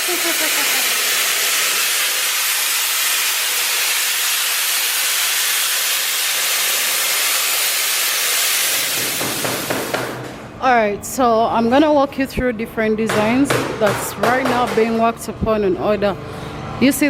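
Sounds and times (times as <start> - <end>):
pressurised gas jet hissing: 0.0 - 10.1.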